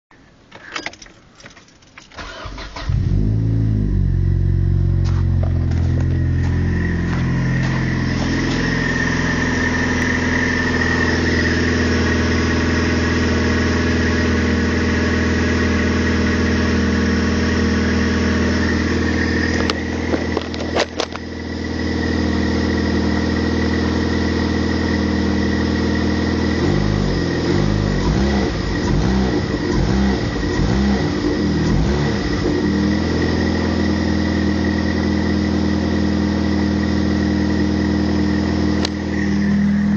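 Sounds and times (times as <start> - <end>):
engine idling: 3.9 - 39.9
high-pitched whirring whine: 38.4 - 39.9.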